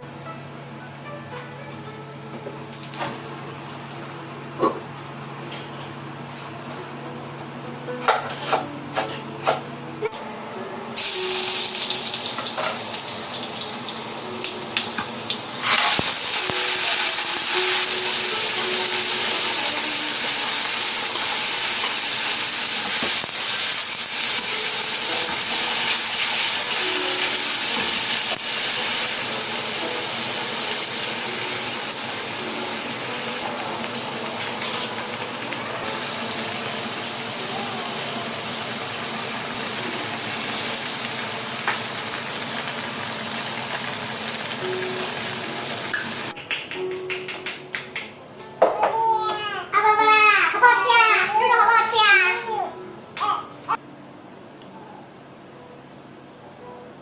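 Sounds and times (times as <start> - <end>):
water running from a tap: 11.0 - 15.6.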